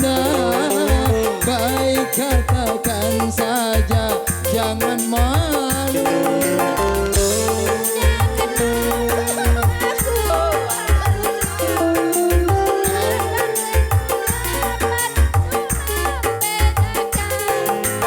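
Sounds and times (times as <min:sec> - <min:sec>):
bouncing bass and drum beat: 0:00.0 - 0:18.0
keyboard melody: 0:00.0 - 0:18.0
steady shaker: 0:04.3 - 0:18.0.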